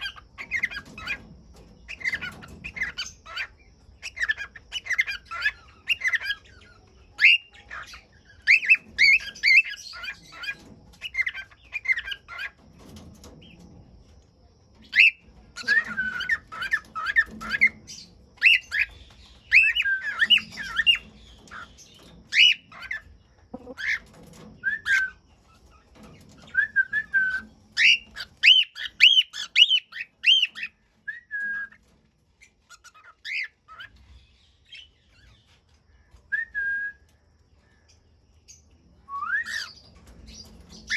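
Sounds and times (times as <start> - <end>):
cockatiels chirping and whistling: 0.0 - 1.3, 1.9 - 13.0, 14.9 - 25.2, 26.4 - 31.8, 32.6 - 34.0, 39.1 - 40.9.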